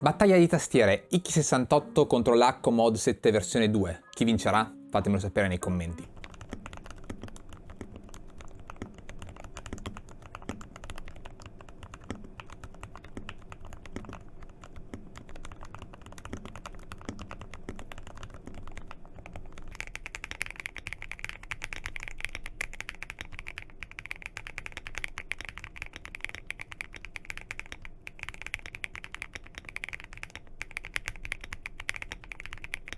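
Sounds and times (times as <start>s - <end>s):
typing on mechanical keyboard: 6.0s - 32.9s.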